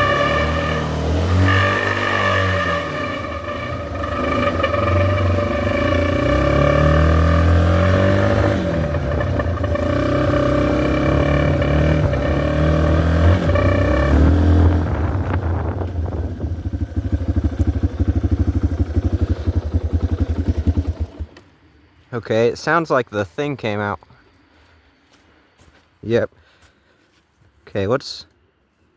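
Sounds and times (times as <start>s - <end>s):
air horn steady tone: 0.0s - 6.4s
dirt bike engine revving: 0.0s - 21.4s.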